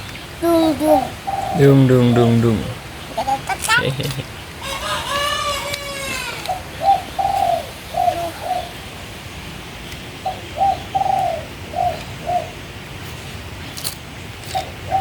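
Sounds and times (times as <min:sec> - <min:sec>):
dove cooing: 0:00.4 - 0:08.9, 0:10.2 - 0:12.6, 0:14.5 - 0:15.0.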